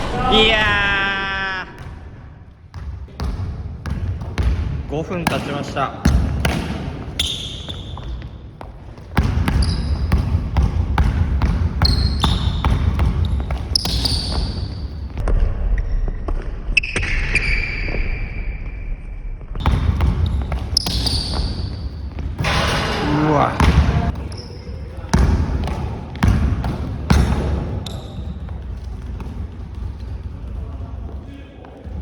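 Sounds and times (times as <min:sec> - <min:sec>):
sneakers squeaking: 0:00.0 - 0:15.2, 0:19.6 - 0:32.0
basketball dribbling on gym floor: 0:02.7 - 0:15.2, 0:19.6 - 0:22.6, 0:23.6 - 0:32.0.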